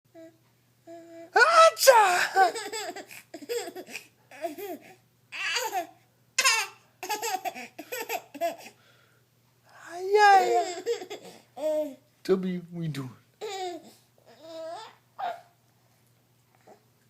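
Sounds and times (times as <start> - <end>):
baby laughing: 2.0 - 8.8, 10.0 - 12.0, 13.4 - 15.4.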